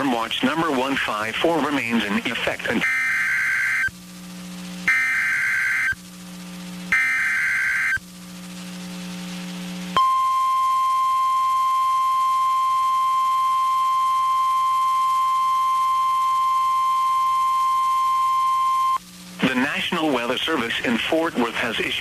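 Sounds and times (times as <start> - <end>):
digital data burst: 0.0 - 3.9, 4.8 - 6.0, 6.9 - 8.0, 18.8 - 22.0
steady warning alarm tone: 0.0 - 4.0, 4.8 - 6.0, 6.9 - 8.0, 10.0 - 19.0
faint low hum: 0.0 - 22.0.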